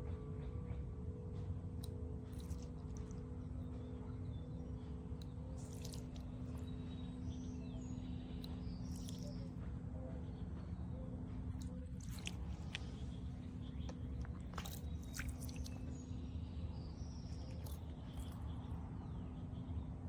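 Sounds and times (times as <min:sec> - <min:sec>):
pump humming: 0:11.6 - 0:16.2.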